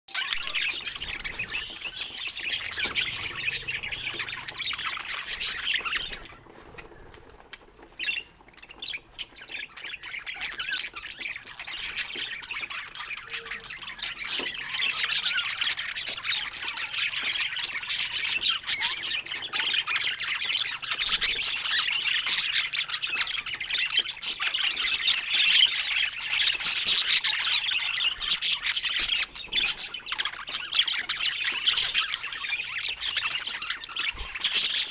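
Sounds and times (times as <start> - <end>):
budgerigars chattering: 0.2 - 7.2, 7.9 - 34.9.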